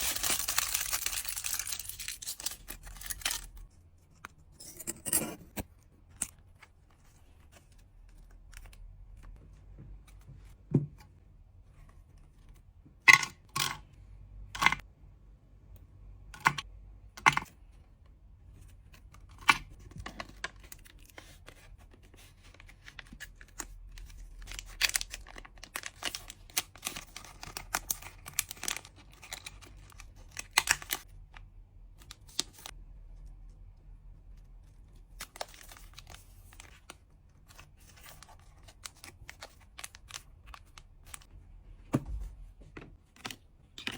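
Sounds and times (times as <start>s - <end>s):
packaging crackling and rustling: 0.0s - 3.7s, 22.5s - 31.1s.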